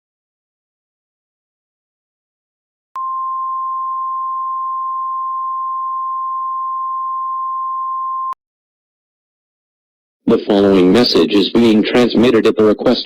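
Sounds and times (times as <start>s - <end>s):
steady single-pitch alert tone: 3.0s - 8.4s.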